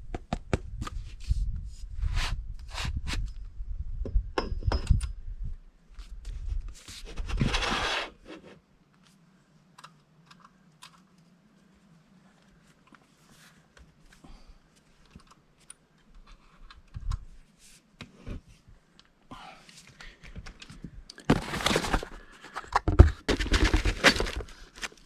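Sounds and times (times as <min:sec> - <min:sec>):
knocks and scrapes of parts handled: 0:20.3 - 0:25.0
packaging rustle: 0:21.2 - 0:22.6.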